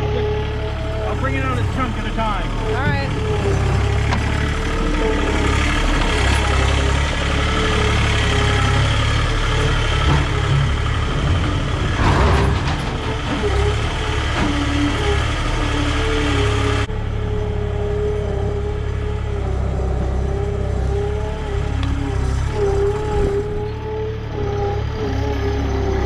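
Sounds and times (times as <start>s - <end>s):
diesel engine low rumble: 0.0s - 26.0s.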